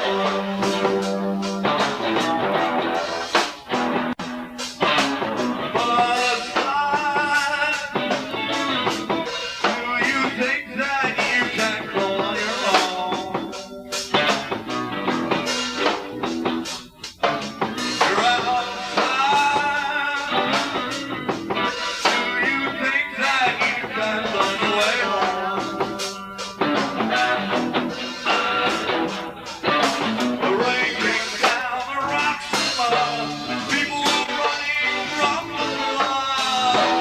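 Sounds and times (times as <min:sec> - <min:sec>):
bass guitar: 0:00.0 - 0:37.0
drums: 0:00.0 - 0:37.0
electric guitar: 0:00.0 - 0:37.0.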